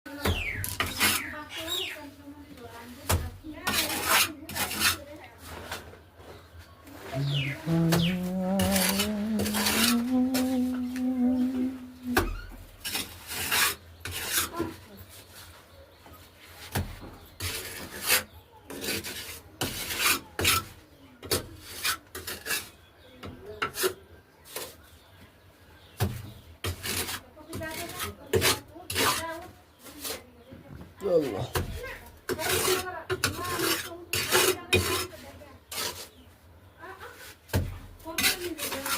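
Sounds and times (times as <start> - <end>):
rough scraping and rubbing: 3.6 - 6.4, 7.0 - 14.8, 26.7 - 30.4, 31.5 - 36.3, 38.1 - 38.9
tone rising in pitch: 7.2 - 12.2.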